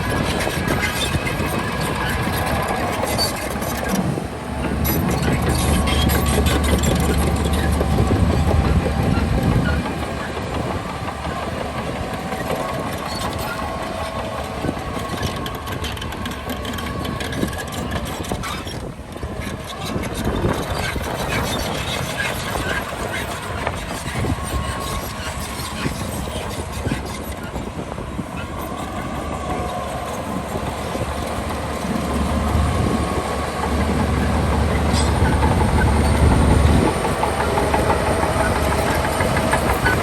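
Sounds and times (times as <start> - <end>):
bulldozer diesel engine: 0.0 - 40.0.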